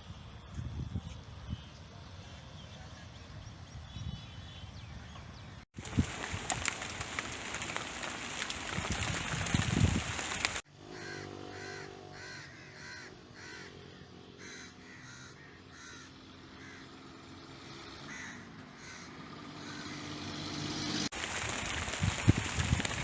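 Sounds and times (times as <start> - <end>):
bird harsh calls: 3.9 - 17.0, 18.1 - 20.3.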